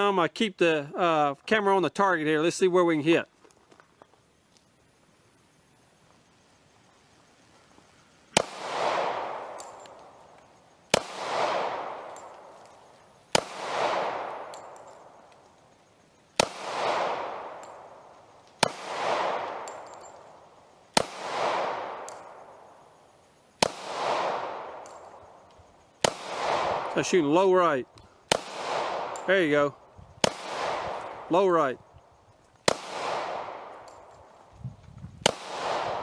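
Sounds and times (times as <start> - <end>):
pistol shots with echo: 8.4 - 10.2, 10.9 - 12.7, 13.3 - 15.2, 16.4 - 22.7, 23.6 - 25.2, 26.0 - 27.4, 28.3 - 31.6, 32.6 - 34.2, 35.2 - 36.0.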